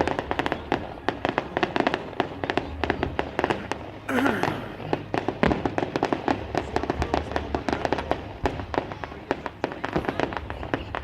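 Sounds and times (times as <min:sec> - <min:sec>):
fireworks cracking and banging: 0:00.0 - 0:11.0.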